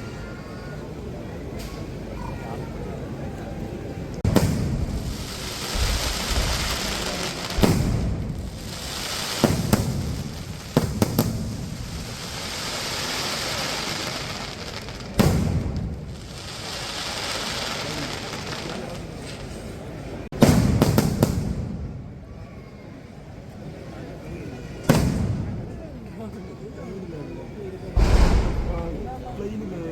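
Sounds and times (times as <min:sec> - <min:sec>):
crackling hiss of fireworks: 0:04.1 - 0:22.4, 0:24.9 - 0:25.8, 0:28.0 - 0:29.9
fireworks bangs: 0:04.2 - 0:19.2, 0:20.4 - 0:22.0, 0:28.0 - 0:29.9.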